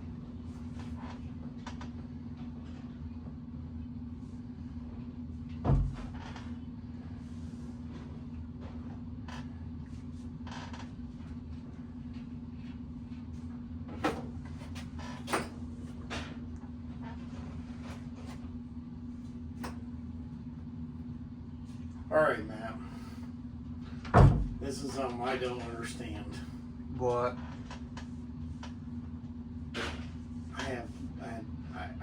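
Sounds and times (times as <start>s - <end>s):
steady low hum: 0.0s - 32.0s
heavy thump: 24.1s - 24.6s.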